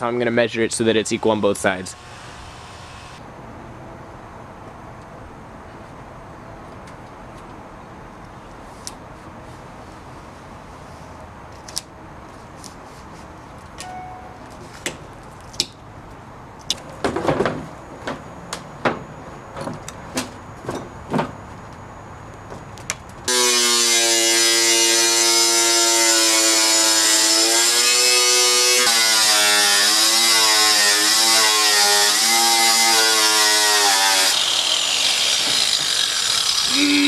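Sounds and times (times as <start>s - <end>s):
power tool whining: 1.8s - 3.2s, 23.3s - 37.0s.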